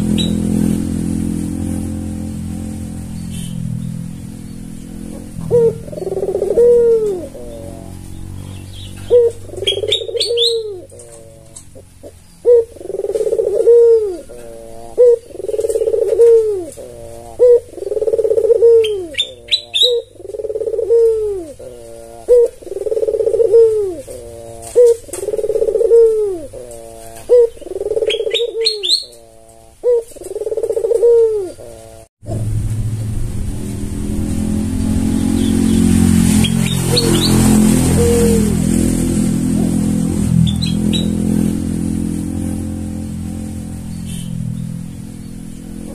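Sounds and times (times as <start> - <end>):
high chirps: 0.0 - 0.6, 40.3 - 41.4
dove cooing: 0.0 - 32.4, 35.2 - 45.9
steady low rumble: 32.2 - 36.4.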